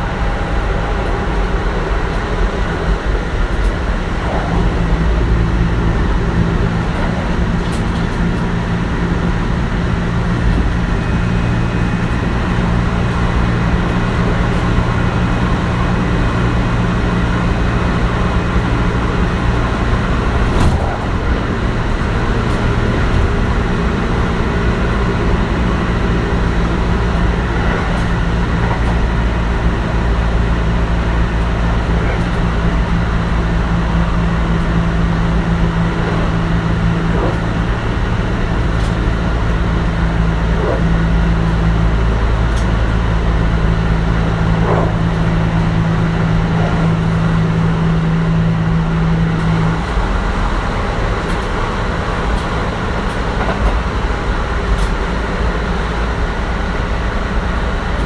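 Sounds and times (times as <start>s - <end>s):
train wheel and running noise: 0.0s - 58.0s.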